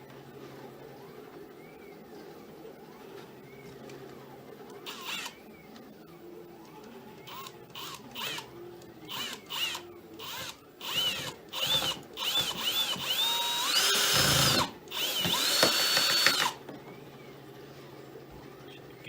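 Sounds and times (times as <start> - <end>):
electric drill driving screw: 4.9 - 5.4, 7.3 - 8.5, 9.1 - 16.6.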